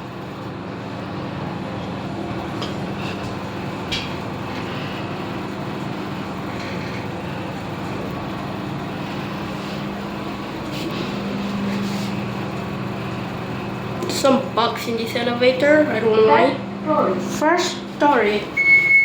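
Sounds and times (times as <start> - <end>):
lift running hum: 0.0 - 19.0.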